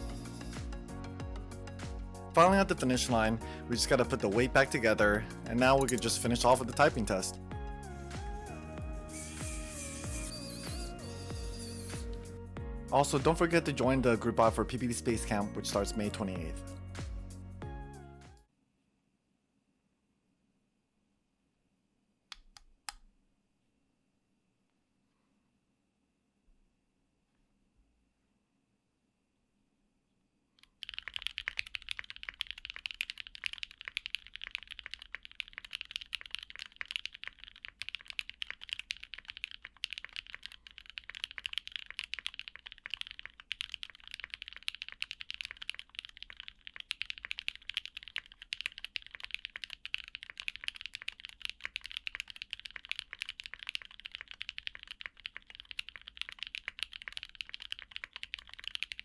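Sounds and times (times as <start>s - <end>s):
fast mechanical keyboard typing: 0.0s - 0.6s, 2.4s - 7.3s, 9.2s - 12.1s, 30.6s - 59.0s.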